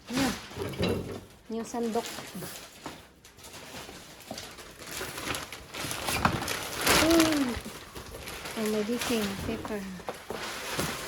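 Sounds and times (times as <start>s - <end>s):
packaging rustling: 1.2s - 11.0s.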